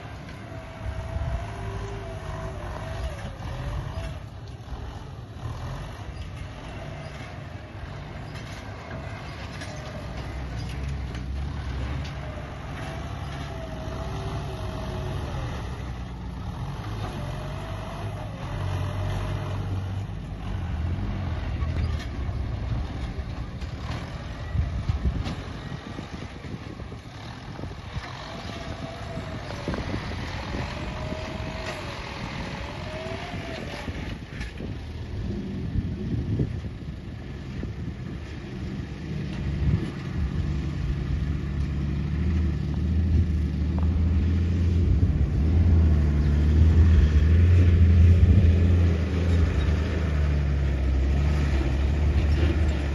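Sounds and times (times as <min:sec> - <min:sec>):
excavator diesel engine running: 0:00.0 - 0:52.9.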